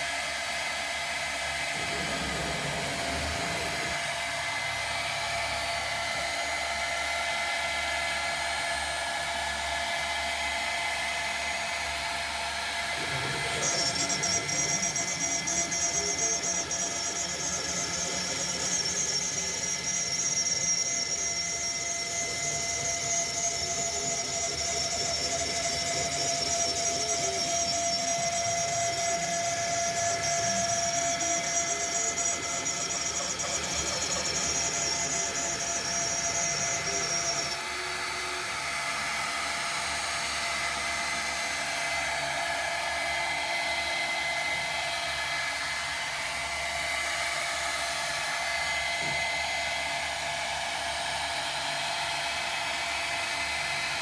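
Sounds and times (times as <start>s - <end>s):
cnc router spindle whine: 0.0s - 54.0s
milling cutting noise: 1.8s - 4.2s, 13.0s - 37.6s.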